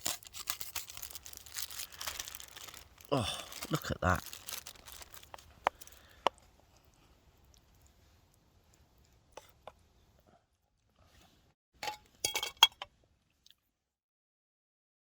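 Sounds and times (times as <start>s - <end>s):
metal utensil clinking on cookware: 11.8s - 12.9s.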